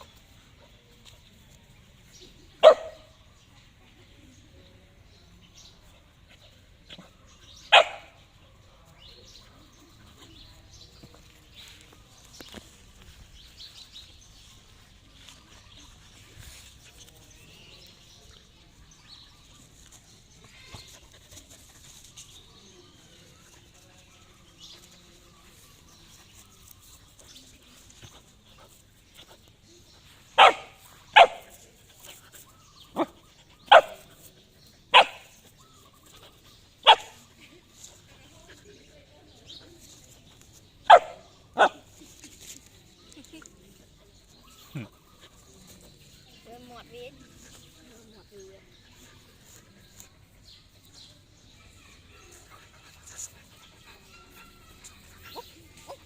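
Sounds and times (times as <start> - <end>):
dog barking: 2.6 - 3.1, 7.7 - 8.2, 30.4 - 31.5, 33.7 - 34.0, 34.9 - 35.3, 36.8 - 37.2, 40.9 - 41.8.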